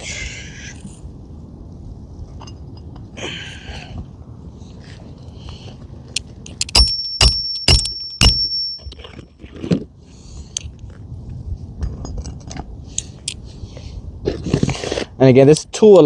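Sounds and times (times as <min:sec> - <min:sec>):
hammer striking metal tool: 0:06.6 - 0:08.9.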